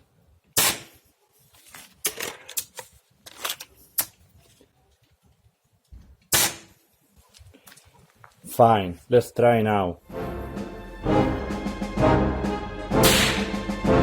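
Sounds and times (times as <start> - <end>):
air rifle shots: 0.6 - 1.0, 6.3 - 6.8, 13.0 - 13.8.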